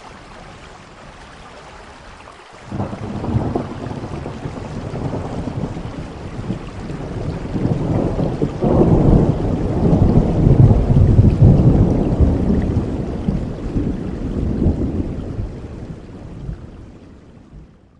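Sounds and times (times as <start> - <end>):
steady rain: 0.0 - 17.9
thunder rolling: 2.7 - 17.0.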